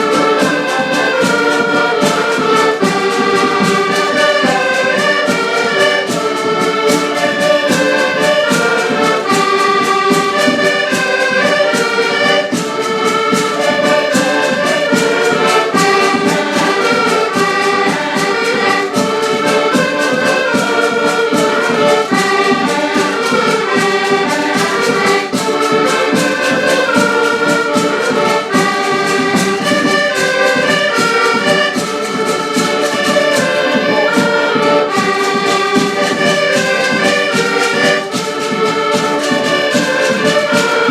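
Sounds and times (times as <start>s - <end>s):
band playing a tune: 0.0s - 40.9s.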